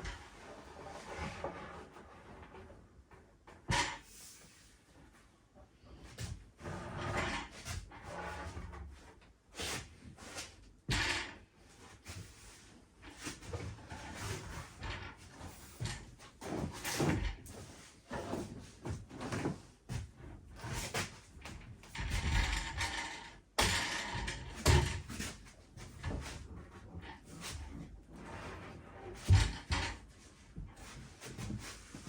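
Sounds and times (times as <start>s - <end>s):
knocks and clunks of objects: 0.0s - 4.1s, 10.8s - 32.0s
scraping of objects moved: 0.0s - 4.5s, 5.8s - 9.1s, 9.7s - 32.0s.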